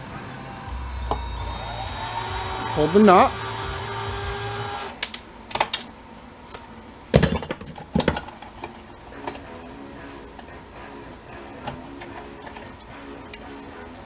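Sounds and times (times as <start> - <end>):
small motor whirring: 0.6 - 5.0
tools and metal parts clinking: 7.2 - 8.4.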